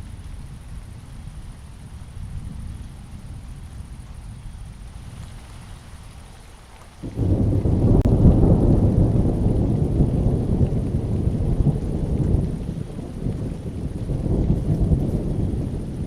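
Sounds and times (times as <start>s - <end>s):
steady rain: 0.0s - 16.0s
thunder rumbling: 7.0s - 16.0s.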